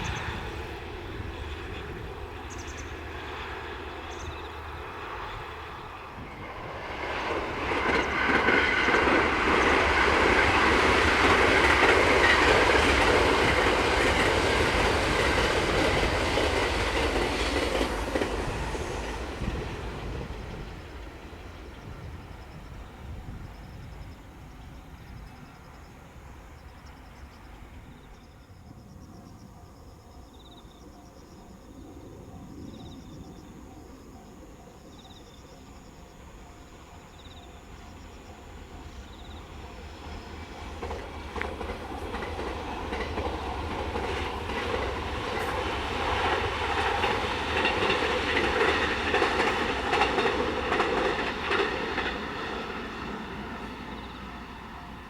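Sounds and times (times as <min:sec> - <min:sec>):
electric train rumbling: 0:00.0 - 0:55.0
train wheels clattering over rail joints: 0:40.1 - 0:54.2.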